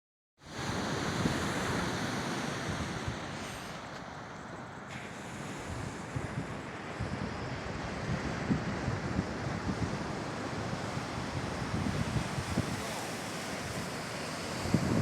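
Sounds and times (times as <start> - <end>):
waves: 0.4 - 15.0
wind buffeting microphone: 5.5 - 15.0.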